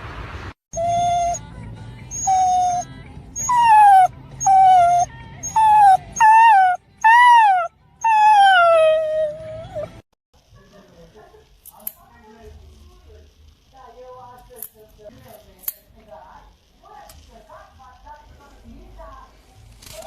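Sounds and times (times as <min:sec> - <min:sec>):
dog whining and howling: 0:00.7 - 0:01.5, 0:02.1 - 0:10.0.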